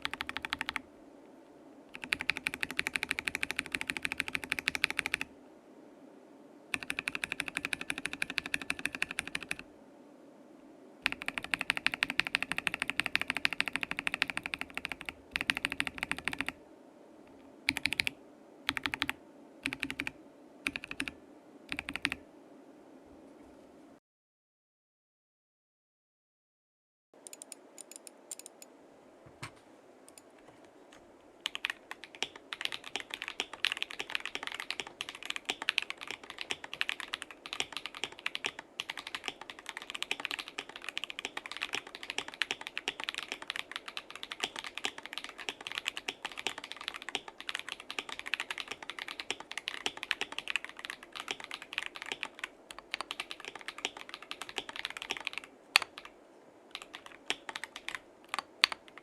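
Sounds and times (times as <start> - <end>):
typing on mechanical keyboard: 0.0 - 0.8, 1.9 - 5.3, 6.8 - 9.6, 11.0 - 16.6, 17.7 - 22.2, 31.4 - 56.1, 56.7 - 59.0.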